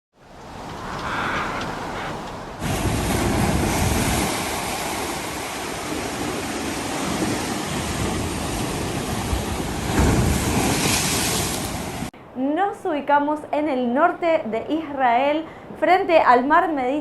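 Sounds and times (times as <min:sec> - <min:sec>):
sea waves washing in: 0:00.2 - 0:12.1.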